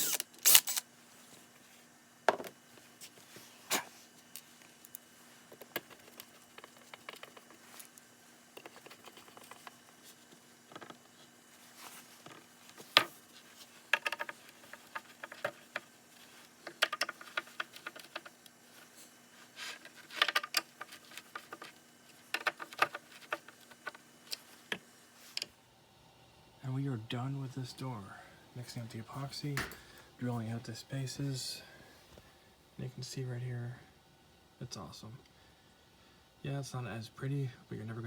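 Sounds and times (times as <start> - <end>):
small tools clicking and scraping: 0.0 - 0.8
faint steady hum: 0.0 - 38.0.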